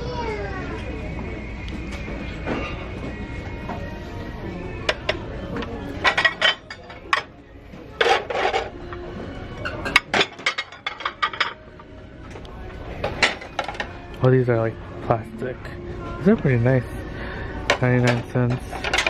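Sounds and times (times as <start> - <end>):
dishes clattering: 4.8 - 9.0, 9.6 - 11.8, 13.0 - 14.0, 17.6 - 19.0
plates clinking together: 6.0 - 7.3, 7.9 - 8.7, 9.6 - 11.6, 17.7 - 19.0.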